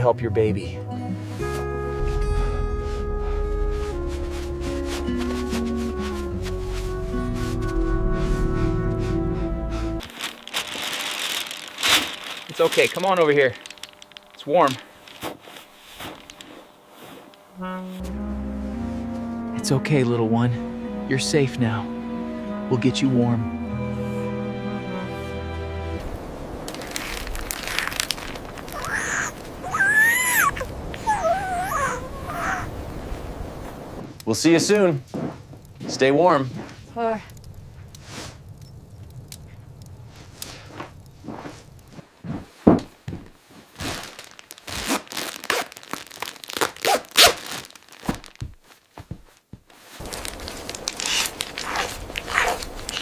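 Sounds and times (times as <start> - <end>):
rustling and crinkling: 1.3 - 9.4, 10.0 - 18.1, 26.1 - 32.8, 34.0 - 53.0
panther cub crying: 28.7 - 32.8.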